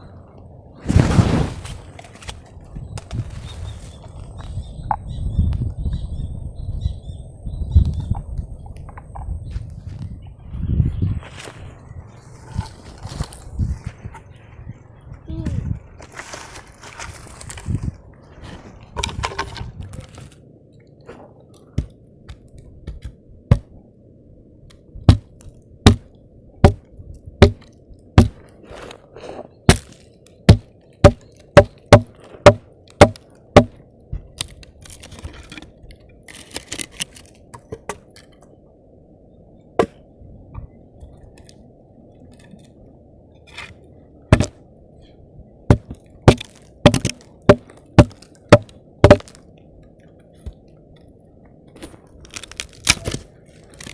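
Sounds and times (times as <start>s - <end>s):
steady low background noise: 0.0s - 53.9s
sharp chopping blows: 25.9s - 26.8s, 27.4s - 28.4s.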